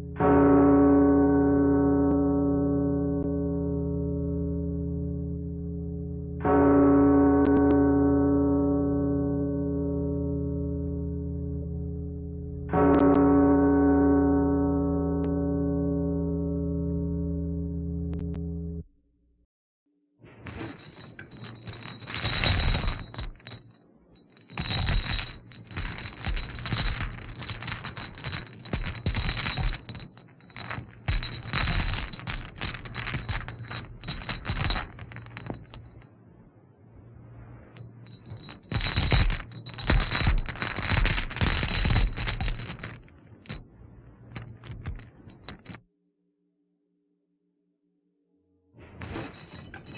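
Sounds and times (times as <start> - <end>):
low hum: 2.0 - 19.4
dense clinking rattling clatter: 20.5 - 36.1, 37.6 - 45.8, 49.0 - 49.9.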